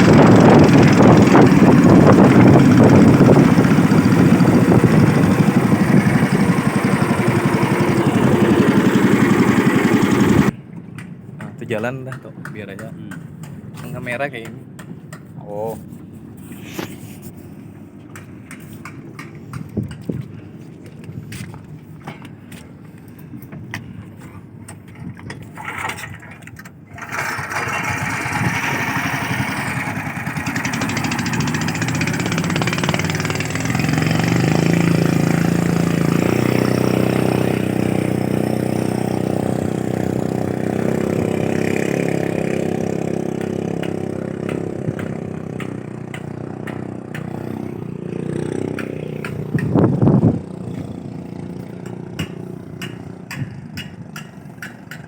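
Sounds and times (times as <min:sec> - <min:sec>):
boat motor running: 0:00.0 - 0:10.6, 0:24.8 - 0:53.5.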